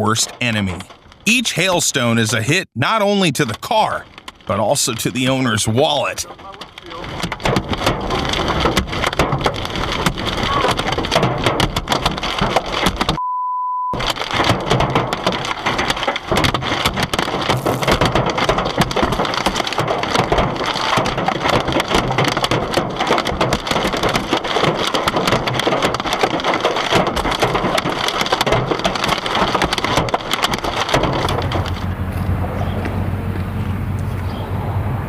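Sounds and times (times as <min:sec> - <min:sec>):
hailstones pelting a car: 0:00.0 - 0:02.4, 0:03.4 - 0:13.2, 0:14.0 - 0:32.3
beep tone: 0:13.2 - 0:14.0.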